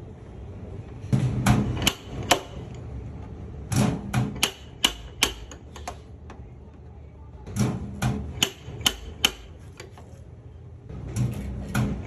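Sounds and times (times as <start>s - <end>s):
tool tapping sheet metal: 3.7s - 6.0s, 7.6s - 9.9s.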